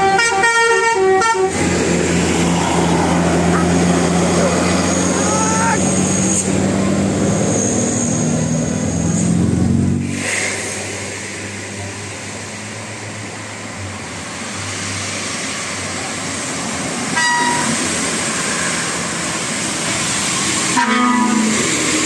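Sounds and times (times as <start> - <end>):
vehicle horn: 0.0 - 1.6, 17.2 - 17.8, 20.8 - 21.6
large vehicle passing: 1.5 - 17.2.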